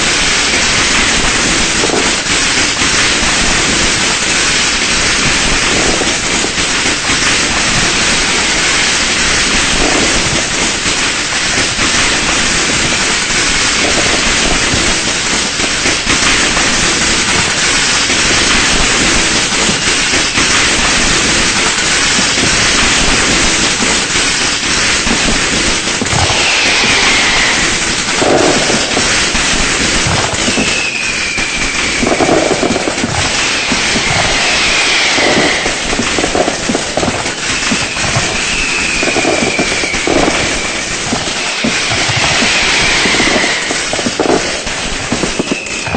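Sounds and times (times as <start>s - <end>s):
firecrackers crackling: 0.0s - 45.9s
high falling whistle: 26.2s - 28.8s, 30.4s - 36.6s, 37.4s - 44.3s, 45.2s - 45.9s.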